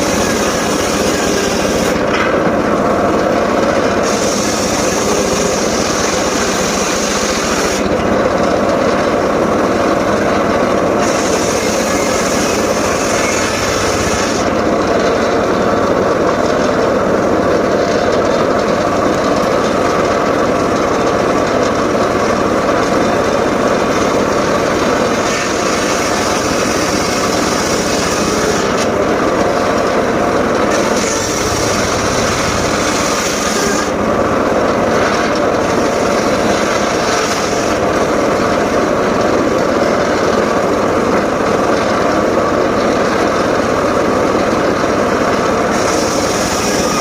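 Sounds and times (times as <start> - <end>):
circular saw cutting wood: 0.0 - 43.6, 44.3 - 47.0.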